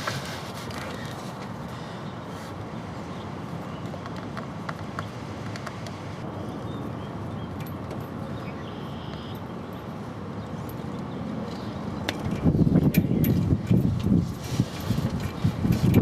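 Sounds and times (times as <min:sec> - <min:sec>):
wind buffeting microphone: 0:09.9 - 0:16.0.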